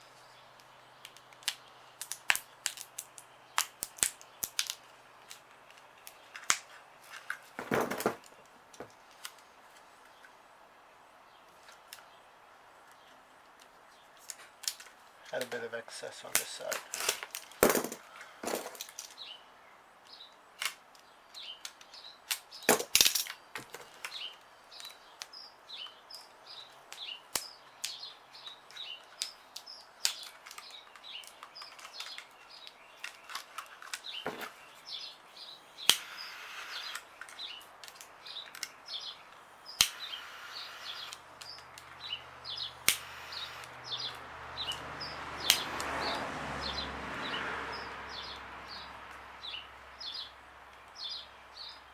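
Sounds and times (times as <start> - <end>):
birds chirping: 0.0 - 51.9
sharp clicks and snaps: 0.6 - 6.7, 26.9 - 34.1, 35.8 - 38.8, 39.7 - 46.0.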